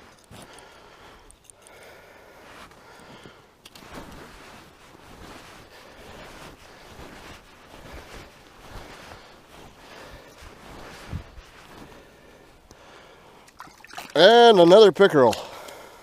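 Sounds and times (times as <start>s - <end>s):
wind buffeting microphone: 10.8s - 11.5s.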